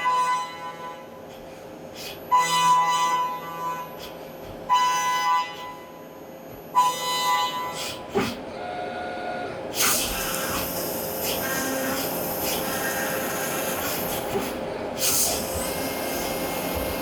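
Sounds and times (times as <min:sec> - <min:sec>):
machine motors whining: 0:08.6 - 0:17.0
drill hissing into metal: 0:09.8 - 0:14.4, 0:15.0 - 0:17.0.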